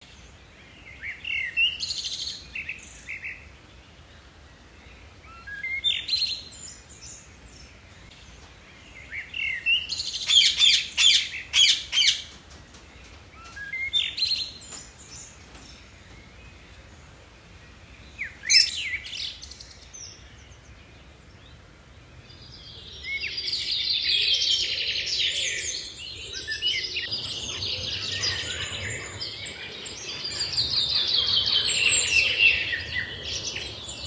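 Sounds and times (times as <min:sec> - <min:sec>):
bird singing: 0:00.0 - 0:21.6, 0:22.3 - 0:34.0.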